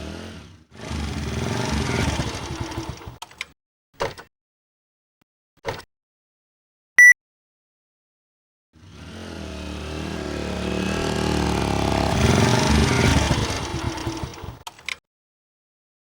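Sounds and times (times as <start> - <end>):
motorcycle engine running: 8.8 - 14.6.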